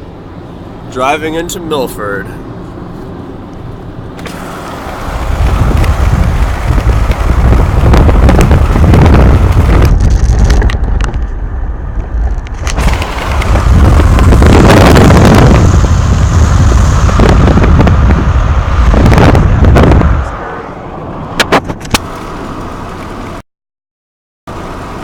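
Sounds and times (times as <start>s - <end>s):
road and wind noise: 0.0s - 23.4s, 24.5s - 25.0s
wind buffeting on microphone: 5.0s - 20.4s.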